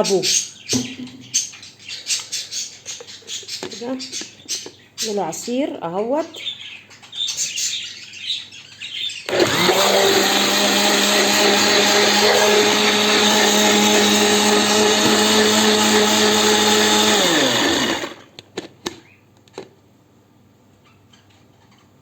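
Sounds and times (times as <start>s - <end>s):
electric blender running: 9.3s - 18.3s.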